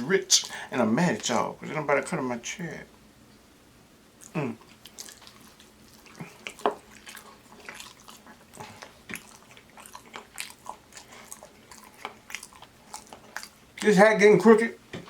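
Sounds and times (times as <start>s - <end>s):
wet chewing mouth sounds: 4.2s - 15.0s.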